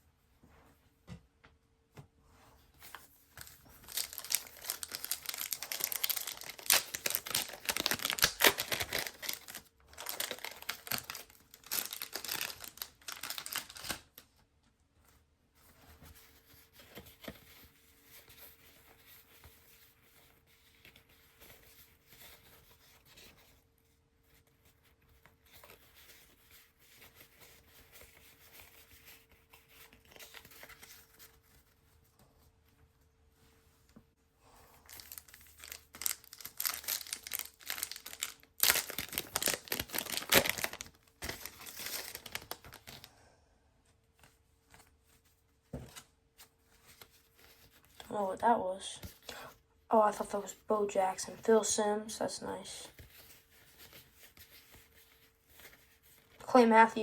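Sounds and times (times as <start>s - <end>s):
trading cards rustling: 2.8s - 14.1s, 34.8s - 43.1s
wrapper ripping and crackling: 3.4s - 14.2s, 34.9s - 43.1s.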